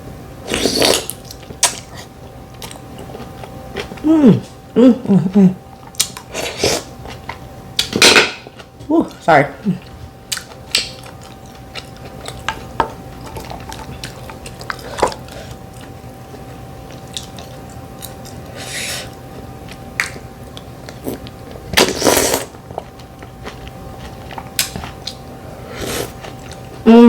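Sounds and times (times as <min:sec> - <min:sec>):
person chewing: 0:00.5 - 0:04.6, 0:09.7 - 0:26.9.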